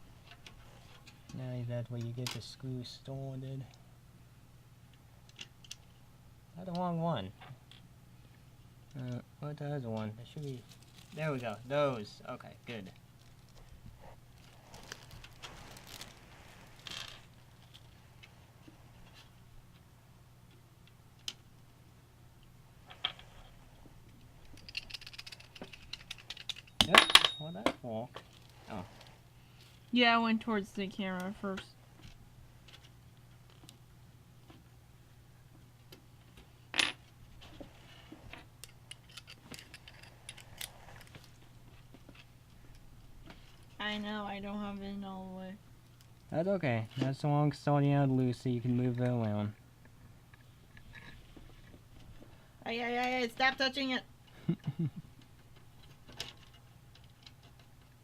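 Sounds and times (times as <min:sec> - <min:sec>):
steady low hum: 0:00.0 - 0:58.0
metal hardware clinking: 0:24.5 - 0:27.8
clicks and taps of small parts: 0:24.6 - 0:26.9.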